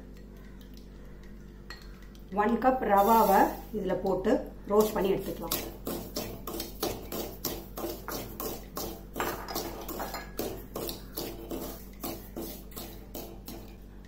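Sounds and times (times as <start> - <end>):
spoon scraping and clinking in pan: 6.5 - 13.8.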